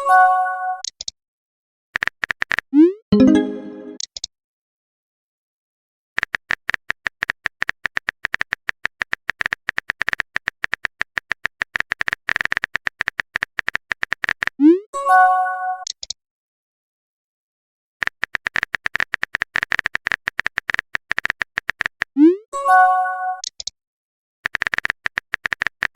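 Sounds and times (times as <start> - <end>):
bright message chime: 3.2 - 4.0
phone keyboard typing clicks: 6.2 - 14.5, 18.0 - 22.1, 24.4 - 25.9.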